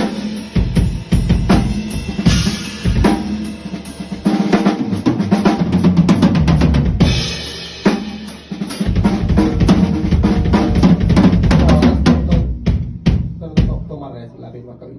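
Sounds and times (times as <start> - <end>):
bass drum and snare pattern: 0.0 - 14.1.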